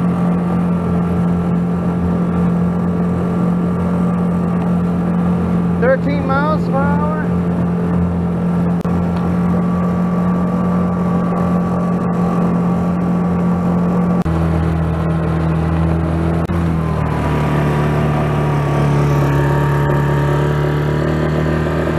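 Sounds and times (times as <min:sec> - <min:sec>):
outboard motor running: 0:00.0 - 0:21.9.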